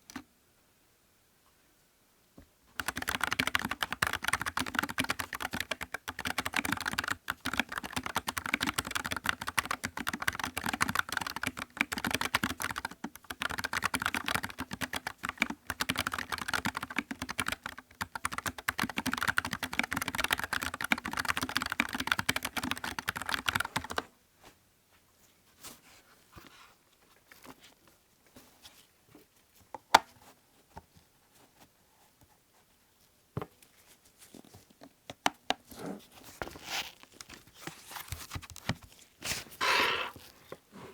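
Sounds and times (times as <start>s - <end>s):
fast typing on mechanical keyboard: 2.8s - 24.0s.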